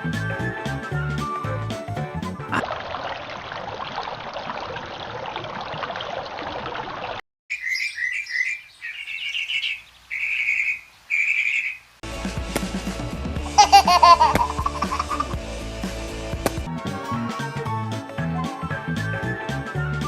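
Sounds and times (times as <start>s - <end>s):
bird chirping calls: 7.5s - 12.0s
birds chattering: 7.5s - 12.0s.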